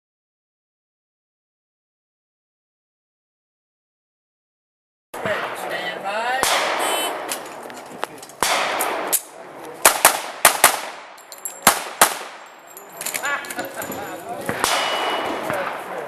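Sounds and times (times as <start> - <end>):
pistol shots with echo: 6.4 - 7.4, 8.4 - 12.7, 14.4 - 16.0.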